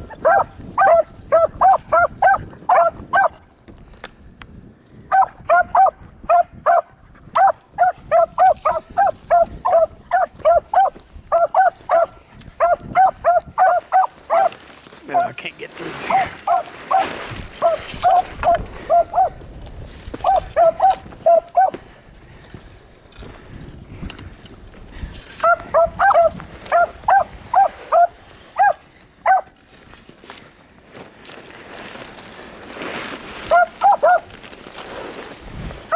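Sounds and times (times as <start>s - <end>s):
beagles barking: 0.0s - 3.4s, 5.1s - 15.4s, 16.0s - 19.4s, 20.2s - 21.9s, 25.4s - 29.6s, 33.5s - 34.3s
dog yelping: 0.0s - 3.4s, 5.1s - 14.6s, 16.1s - 19.4s, 20.2s - 21.8s, 25.4s - 29.5s, 33.5s - 34.3s.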